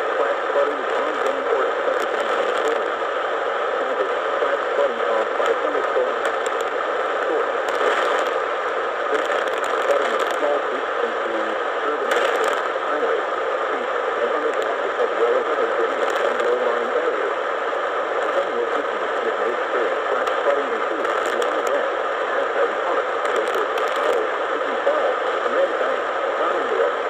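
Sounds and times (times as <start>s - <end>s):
faint voice on radio: 0.0s - 27.0s
radio hiss and static: 0.0s - 27.0s.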